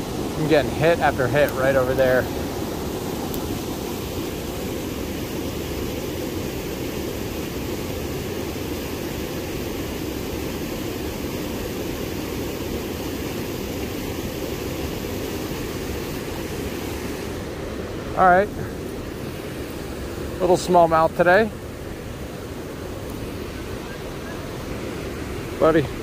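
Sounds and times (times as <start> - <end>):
stream waterfall rushing: 0.0 - 26.0.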